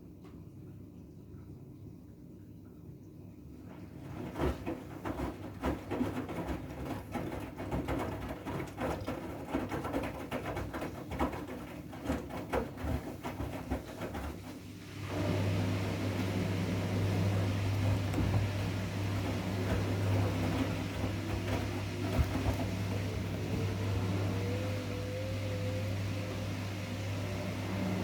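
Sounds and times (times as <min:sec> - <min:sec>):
steady machine hum: 0:14.8 - 0:28.0
water swishing: 0:14.8 - 0:28.0
washing machine drum knocking: 0:15.2 - 0:28.0.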